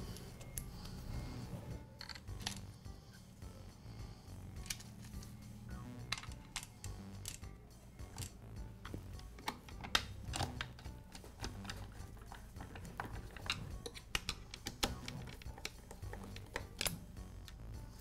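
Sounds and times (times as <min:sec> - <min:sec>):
hand tools clicking and tapping: 0:06.1 - 0:17.6.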